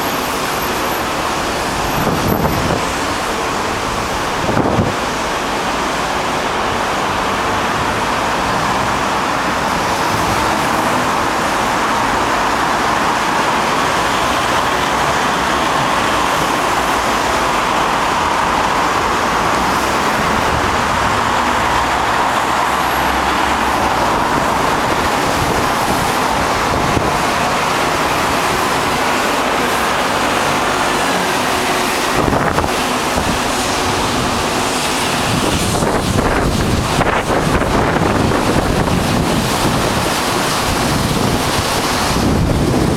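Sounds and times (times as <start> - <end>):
road traffic noise: 0.0 - 42.9
wind buffeting microphone: 1.6 - 5.6, 15.8 - 42.9.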